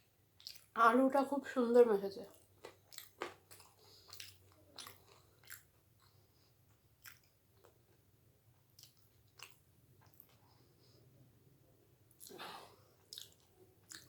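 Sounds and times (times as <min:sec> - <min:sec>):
close-up chewing crunches: 0:00.4 - 0:00.7, 0:02.3 - 0:06.2, 0:08.8 - 0:10.4, 0:13.0 - 0:14.0.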